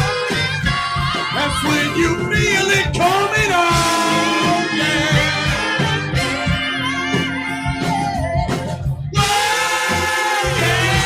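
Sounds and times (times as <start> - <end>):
live band playing: 0.0 - 11.0
steady drum beats: 0.0 - 11.0
person singing sustained notes: 3.7 - 10.0.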